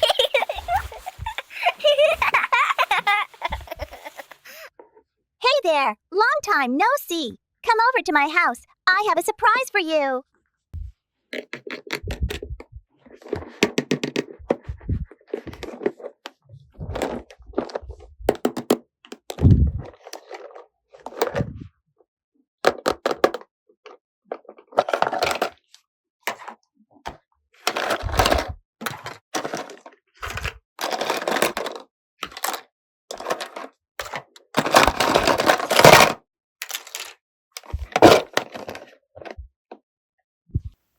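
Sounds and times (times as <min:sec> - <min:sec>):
plastic toy pieces clicking: 0:29.4 - 0:38.4.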